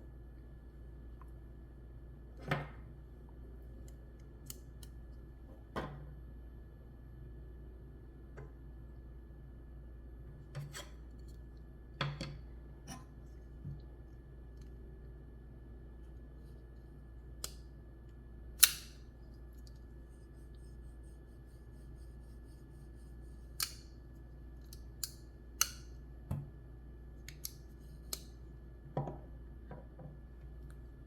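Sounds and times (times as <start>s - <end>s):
folding knife metallic clicks: 18.6s - 19.0s, 23.6s - 23.9s, 24.7s - 25.9s.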